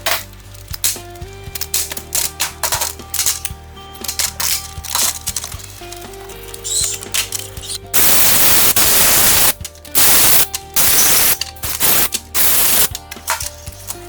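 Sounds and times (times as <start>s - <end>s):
background music: 0.0s - 14.0s
loud hissing bursts: 7.7s - 12.9s.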